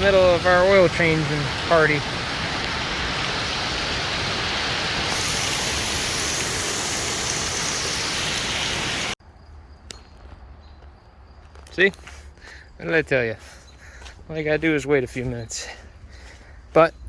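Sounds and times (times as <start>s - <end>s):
heavy rain hissing: 0.0s - 9.2s.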